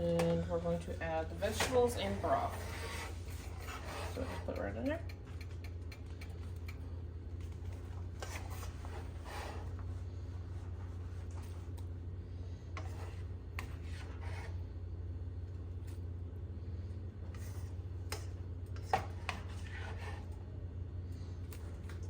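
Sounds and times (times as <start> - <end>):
steady low hum: 0.0 - 22.0
utensil scraping a pan: 1.4 - 4.8, 12.8 - 14.6, 18.8 - 20.3
utensil clicks: 4.6 - 6.9.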